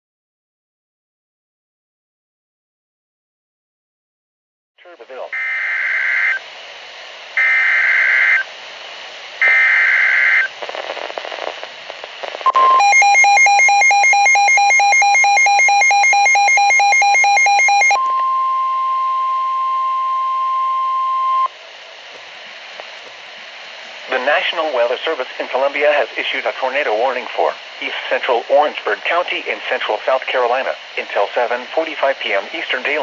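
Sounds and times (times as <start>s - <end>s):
screeching digital header bursts: 7.4s - 8.4s, 9.4s - 10.5s
pulsing multi-tone attention signal: 12.5s - 21.5s
steady single-pitch alert tone: 12.5s - 21.5s
brief beep: 16.2s - 21.5s.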